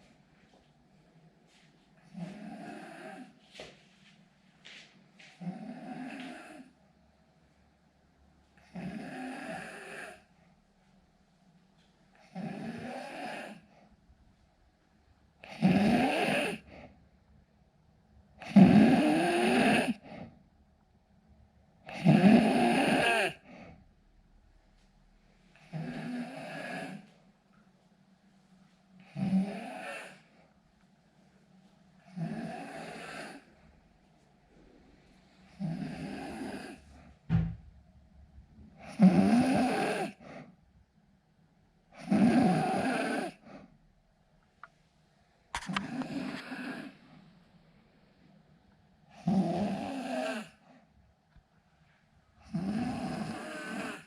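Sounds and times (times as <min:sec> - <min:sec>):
man snoring: 0:08.8 - 0:10.2, 0:12.4 - 0:13.6, 0:15.5 - 0:16.6, 0:18.4 - 0:20.0, 0:21.9 - 0:23.4, 0:25.7 - 0:27.0, 0:29.1 - 0:30.3, 0:32.1 - 0:33.5, 0:35.6 - 0:36.8, 0:38.9 - 0:40.2, 0:42.0 - 0:43.4, 0:49.2 - 0:50.6, 0:52.5 - 0:54.0
short low thump: 0:37.3 - 0:37.7.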